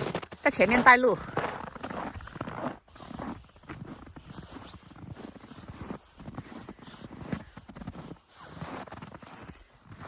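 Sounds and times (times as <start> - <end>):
footsteps scuffing and crunching: 0.0 - 10.0.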